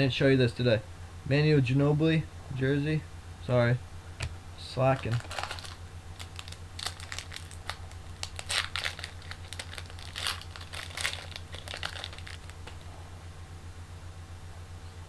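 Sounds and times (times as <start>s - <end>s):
card pack wrapper crinkling: 4.9s - 12.9s.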